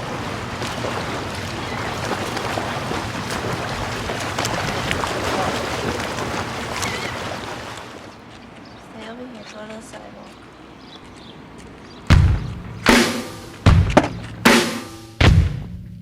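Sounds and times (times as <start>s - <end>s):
ocean surf washing onto beach: 0.0s - 9.4s.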